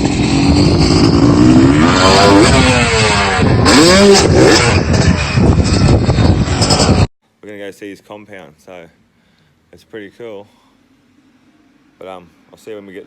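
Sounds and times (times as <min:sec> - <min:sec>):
dirt bike engine revving: 0:00.0 - 0:07.1.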